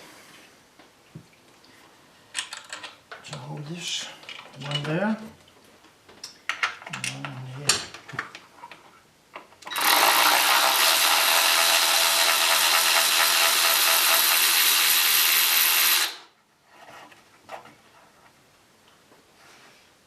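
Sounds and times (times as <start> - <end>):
electric drill running: 9.7 - 16.3.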